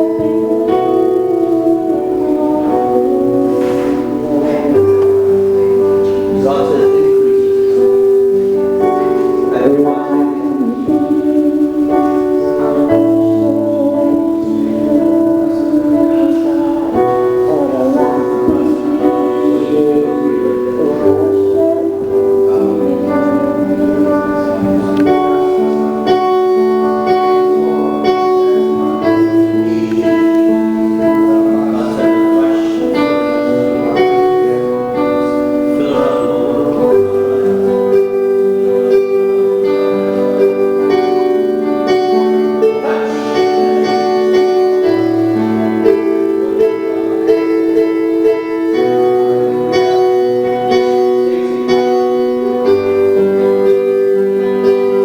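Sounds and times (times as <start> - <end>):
keyboard playing worship music: 0.0 - 55.0.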